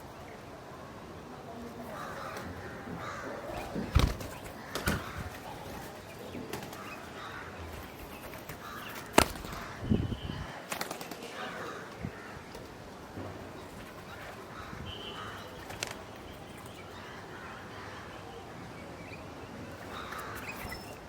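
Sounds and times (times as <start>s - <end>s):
crows cawing: 1.9s - 3.9s, 4.5s - 5.9s, 6.7s - 7.8s, 8.5s - 9.8s, 11.4s - 12.6s, 14.2s - 16.0s, 19.9s - 20.8s.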